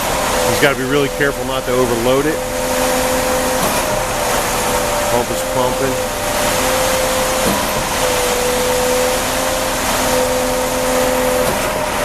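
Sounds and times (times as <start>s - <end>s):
concrete pump truck running: 0.0s - 12.0s.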